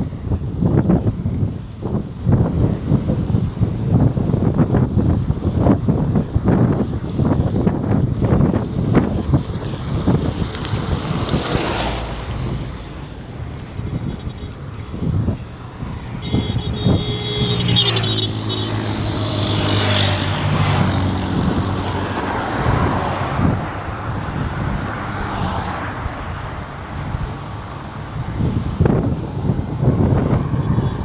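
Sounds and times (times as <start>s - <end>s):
wind noise: 0.0s - 31.0s
tyre rush on road: 1.8s - 31.0s
vehicle engine passing: 6.4s - 31.0s.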